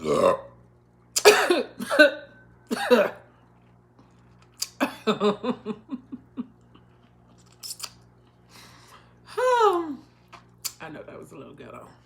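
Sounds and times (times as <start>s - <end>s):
woman burping loudly: 0.0s - 0.6s
woman laughing: 4.8s - 6.8s.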